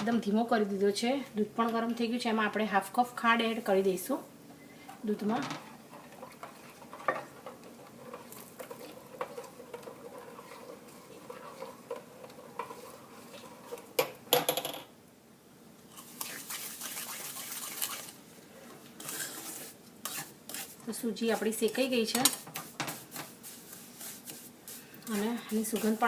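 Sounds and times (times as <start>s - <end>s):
metal spoon scraping a pan: 5.2s - 14.0s, 19.0s - 26.0s.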